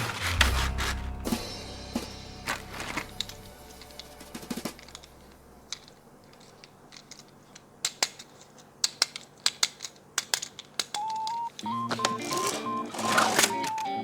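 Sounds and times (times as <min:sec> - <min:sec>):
packaging clicks and snips: 0:00.0 - 0:01.0, 0:05.7 - 0:14.0.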